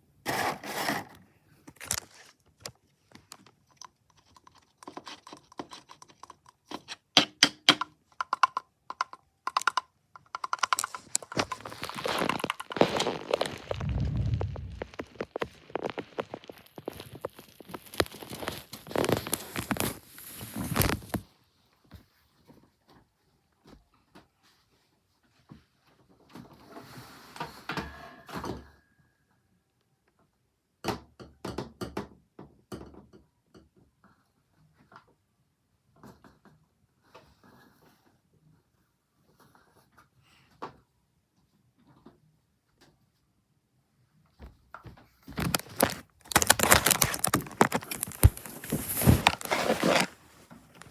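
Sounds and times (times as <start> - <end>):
packaging rustling and crinkling: 0.3 - 5.8, 9.5 - 21.3, 45.3 - 50.9
taps and clicks on packaging: 3.8 - 13.6, 45.4 - 50.1.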